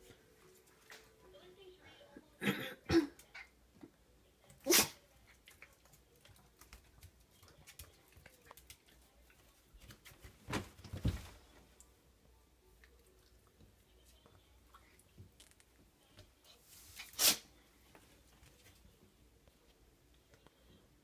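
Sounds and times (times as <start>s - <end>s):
dog sneezing: 4.6s - 5.0s, 17.0s - 17.5s.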